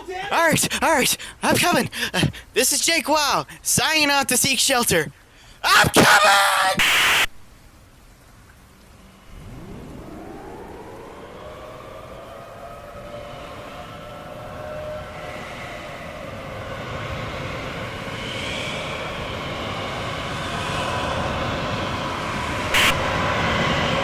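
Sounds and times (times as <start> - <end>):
tornado roar: 9.0 - 24.0
wavering siren: 9.2 - 24.0.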